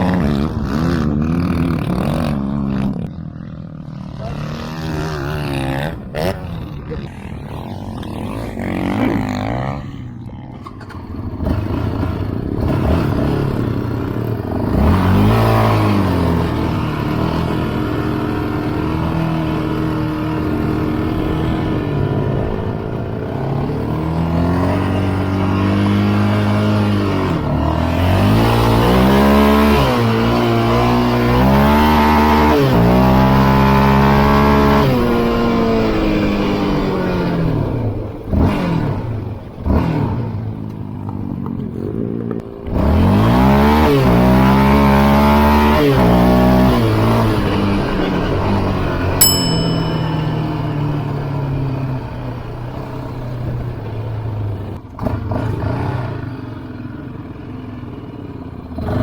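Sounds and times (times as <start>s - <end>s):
off-road vehicle engine revving: 0.0s - 49.2s, 51.2s - 59.0s
sharp metallic ping: 49.2s - 52.3s.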